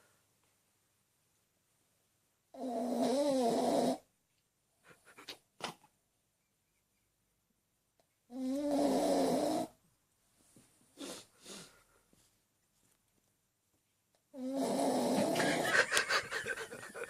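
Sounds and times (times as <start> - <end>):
person snoring: 8.3 - 9.7, 14.3 - 15.7
soft breaths: 10.3 - 13.0.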